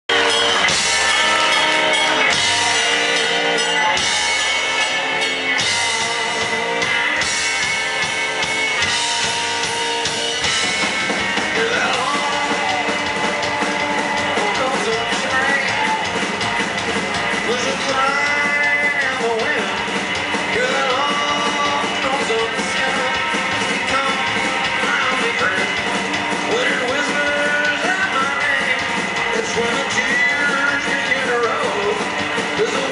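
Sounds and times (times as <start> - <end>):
rockabilly band playing: 0.0 - 32.9
sliding guitar notes: 0.1 - 26.4.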